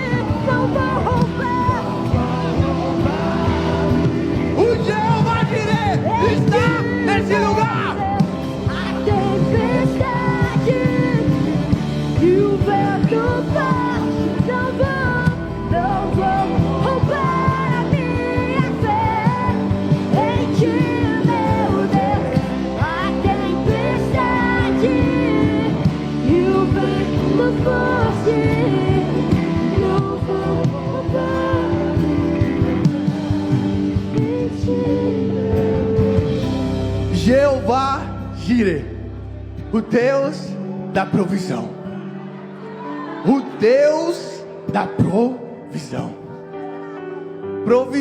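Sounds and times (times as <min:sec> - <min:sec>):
person singing: 0:00.0 - 0:37.8
worship band music: 0:00.0 - 0:48.0.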